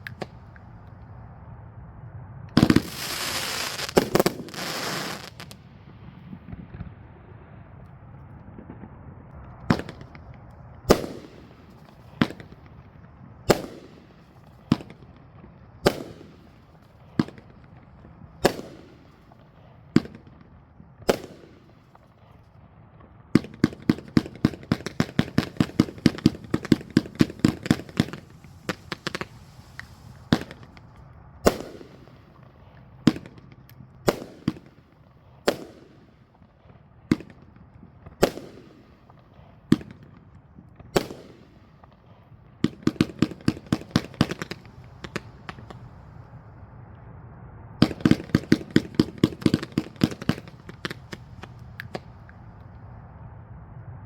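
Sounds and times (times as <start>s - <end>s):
firework cake shots: 23.4s - 34.8s, 42.6s - 46.2s, 47.8s - 52.5s.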